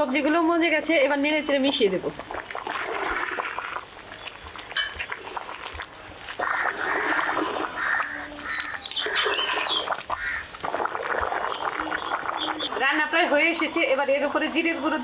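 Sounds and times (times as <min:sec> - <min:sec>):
birds calling harshly: 0:06.4 - 0:12.9
falling bird whistle: 0:07.8 - 0:09.9.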